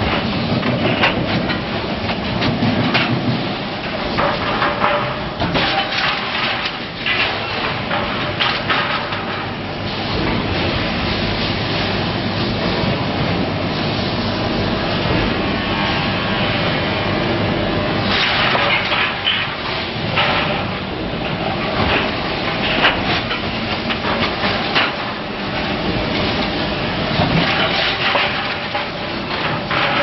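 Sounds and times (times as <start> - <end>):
machinery clanks and knocks: 0.0 - 10.9, 18.0 - 30.0
hissing machine noise: 0.0 - 30.0.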